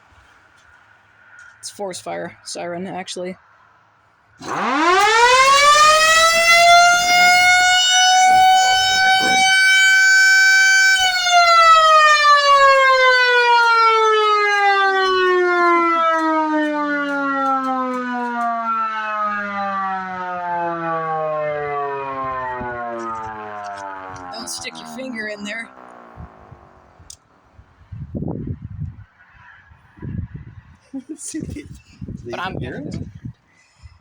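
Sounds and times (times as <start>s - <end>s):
fire siren wailing: 4.4s - 27.2s.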